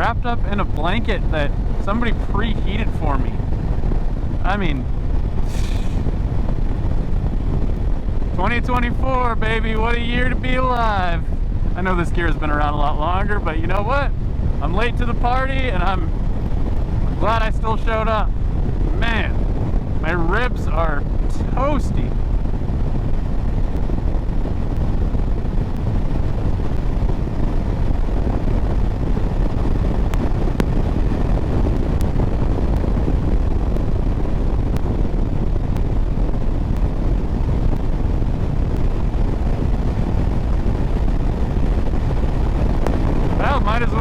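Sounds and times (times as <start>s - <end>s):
wind rushing over microphone: 0.0s - 44.0s.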